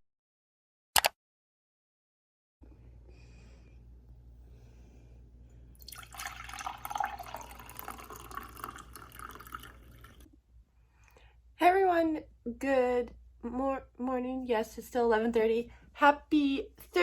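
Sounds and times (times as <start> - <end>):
faint low hum: 2.6 - 17.0
running water: 5.8 - 10.3.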